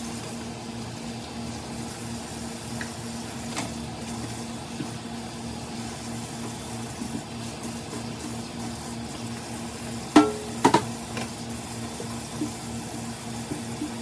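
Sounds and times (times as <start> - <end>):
pot cooking hiss and hum: 0.0 - 14.0.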